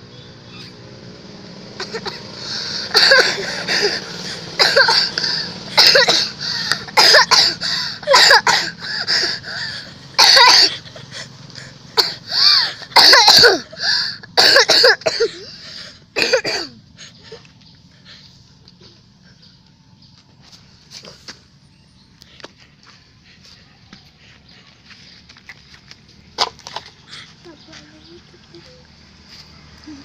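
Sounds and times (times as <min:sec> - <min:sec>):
child coughing: 0:01.8 - 0:04.0, 0:04.6 - 0:09.4, 0:10.2 - 0:10.8, 0:12.0 - 0:15.6, 0:16.2 - 0:16.8.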